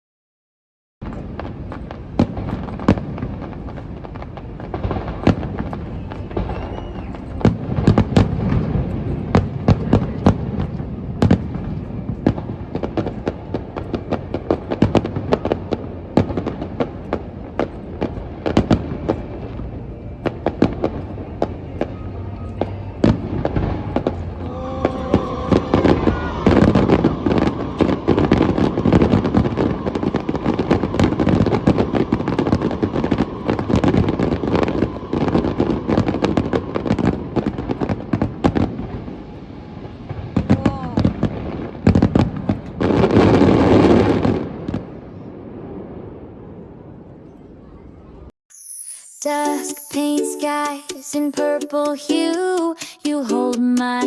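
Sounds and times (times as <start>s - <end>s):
fireworks bangs and crackles: 1.0s - 47.1s
steady musical tones: 11.0s - 28.3s, 49.0s - 54.0s.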